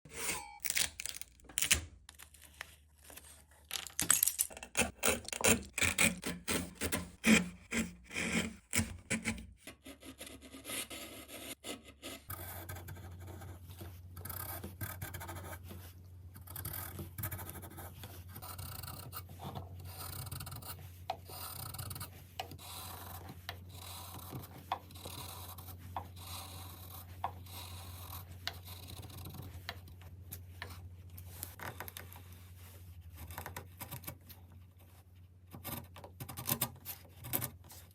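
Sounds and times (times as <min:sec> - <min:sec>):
hand tool scraping wood: 0:04.7 - 0:12.3.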